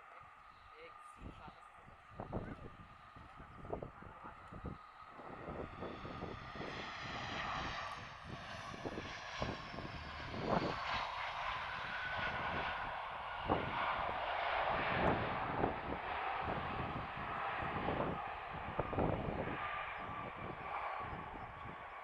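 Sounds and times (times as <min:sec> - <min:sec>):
jet airliner engine whine: 0:00.0 - 0:22.0
wind buffeting microphone: 0:01.2 - 0:22.0.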